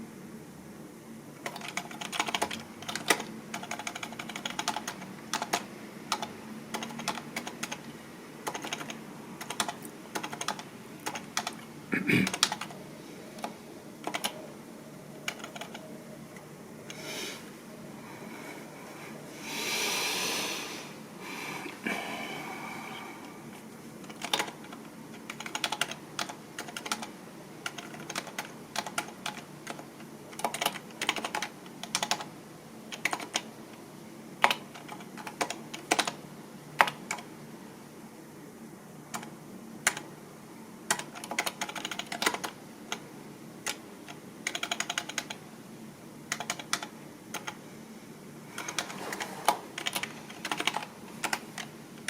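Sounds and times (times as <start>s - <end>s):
typing on computer keyboard: 1.4s - 12.8s, 13.4s - 14.4s, 15.3s - 15.8s, 24.0s - 32.3s, 32.9s - 33.5s, 34.4s - 36.2s, 36.8s - 37.3s, 39.1s - 40.1s, 40.9s - 43.0s, 43.6s - 45.4s, 46.3s - 47.6s, 48.6s - 51.7s.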